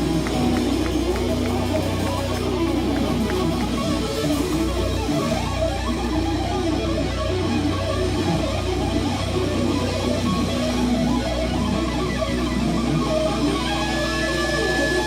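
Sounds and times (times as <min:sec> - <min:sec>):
bass guitar: 0:00.0 - 0:15.0
electric guitar: 0:00.0 - 0:15.0.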